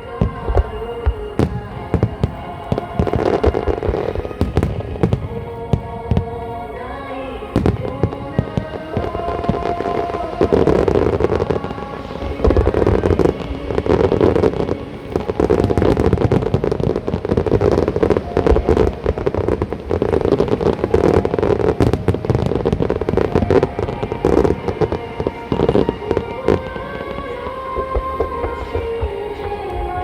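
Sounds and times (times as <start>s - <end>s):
fireworks crackling: 0.0s - 30.0s.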